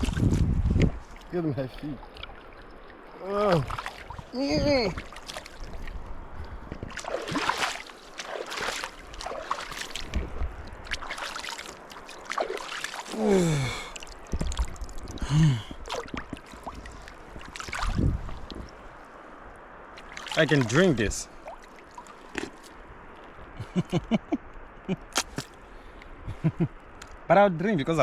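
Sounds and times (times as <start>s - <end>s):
water splashing in a river: 0.0s - 23.4s
person exclaiming: 3.2s - 3.7s, 4.3s - 5.0s, 13.1s - 13.9s.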